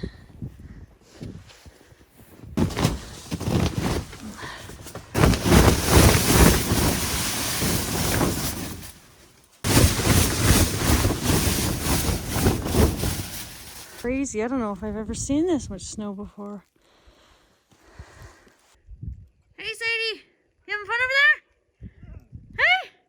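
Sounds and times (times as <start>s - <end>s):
wind buffeting microphone: 0.0s - 1.8s.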